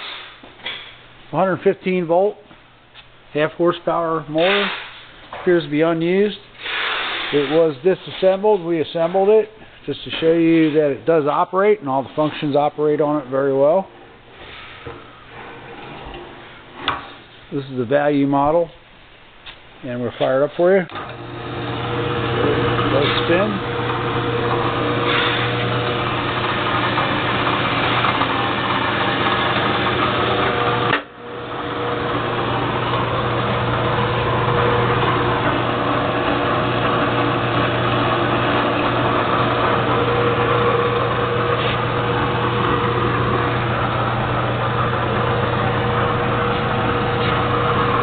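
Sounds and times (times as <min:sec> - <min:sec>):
drill press motor humming: 0:20.9 - 0:48.0.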